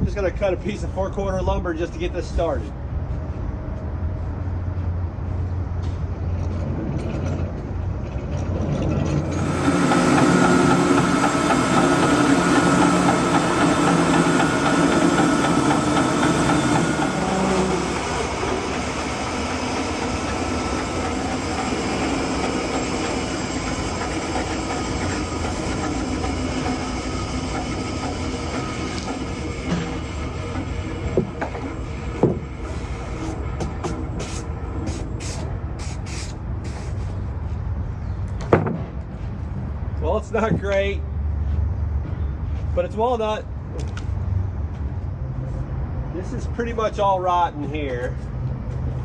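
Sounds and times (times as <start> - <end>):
band sawmill cutting log: 9.2 - 35.1.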